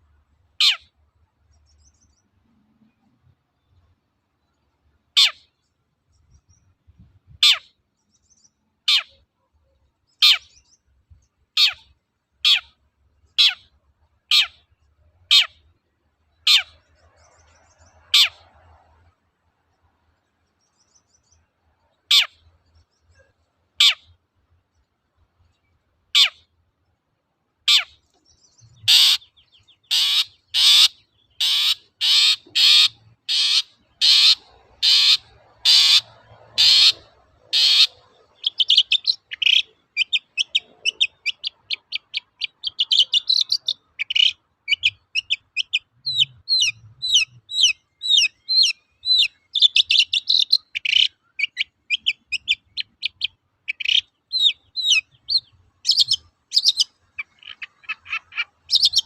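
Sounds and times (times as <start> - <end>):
bird harsh rasping calls: 0.5 - 0.9, 5.2 - 5.6, 7.4 - 7.8, 8.8 - 9.2, 10.2 - 10.7, 11.6 - 18.8, 21.8 - 24.2, 26.1 - 26.5, 27.6 - 59.0
bird sharp chattering notes: 28.7 - 59.0.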